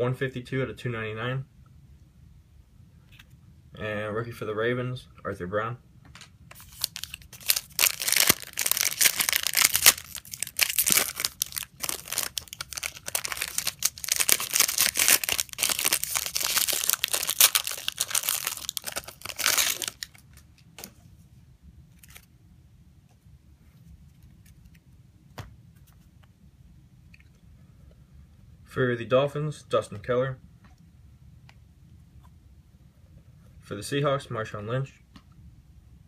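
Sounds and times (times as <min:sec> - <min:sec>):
wrappers tearing and crinkling: 0:06.6 - 0:20.4.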